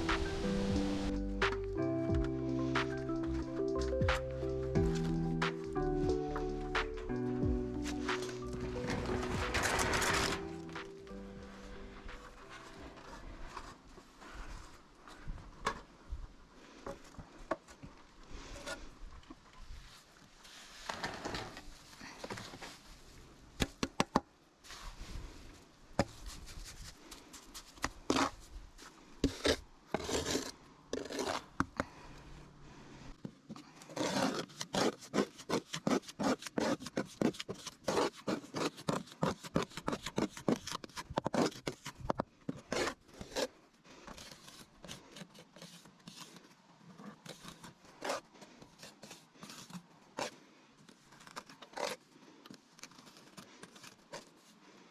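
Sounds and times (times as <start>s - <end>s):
scraping and rubbing strokes: 4.8s - 15.4s, 33.8s - 50.4s.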